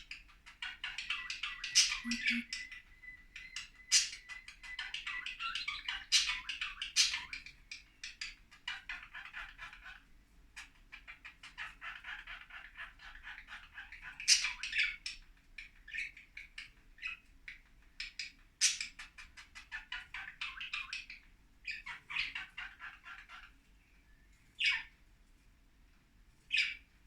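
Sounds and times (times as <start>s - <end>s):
budgerigars chattering: 0.6s - 7.4s.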